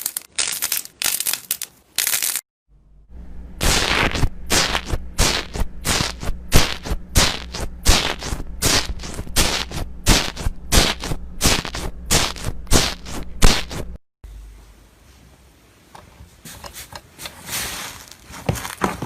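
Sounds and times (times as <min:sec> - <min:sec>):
steady low hum: 0:02.7 - 0:15.6.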